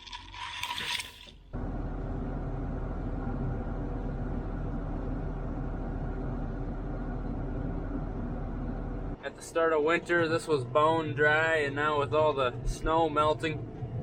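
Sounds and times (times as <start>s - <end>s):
vehicle engine running: 1.5s - 14.0s.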